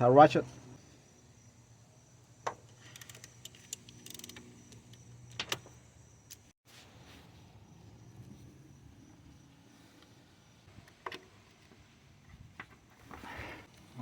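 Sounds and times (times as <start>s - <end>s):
hand ratchet clicking: 2.8s - 4.4s.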